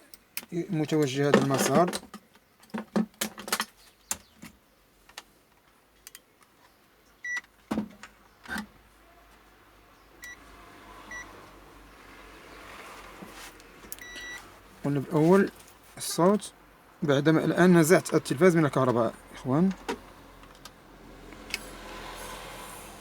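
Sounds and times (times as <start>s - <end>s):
multimeter beeps: 14.0s - 14.4s.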